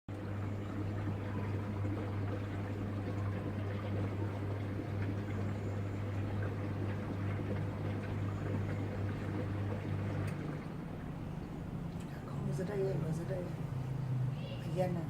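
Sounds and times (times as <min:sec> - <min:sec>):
washing machine humming: 0:00.1 - 0:15.0
water rushing inside: 0:00.1 - 0:15.0.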